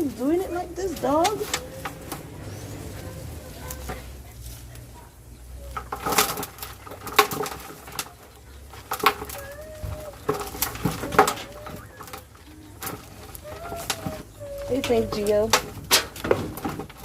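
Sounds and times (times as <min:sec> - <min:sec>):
dove cooing: 0:00.0 - 0:04.2, 0:07.4 - 0:15.8
soil scraping over metal sheet: 0:00.0 - 0:17.0.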